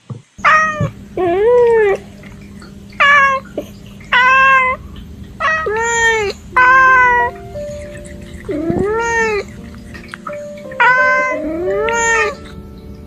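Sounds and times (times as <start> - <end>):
cat meowing: 0.4 - 2.0, 3.0 - 3.5, 4.1 - 4.8, 5.4 - 9.6, 10.7 - 12.5.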